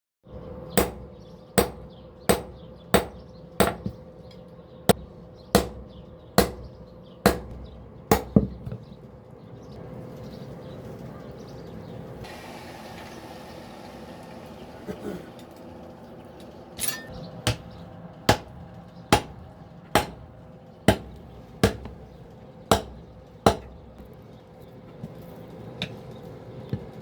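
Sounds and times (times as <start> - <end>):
hammer striking metal on anvil: 0.8 - 4.0, 5.6 - 8.7, 16.8 - 20.3, 20.9 - 22.0, 22.7 - 23.7.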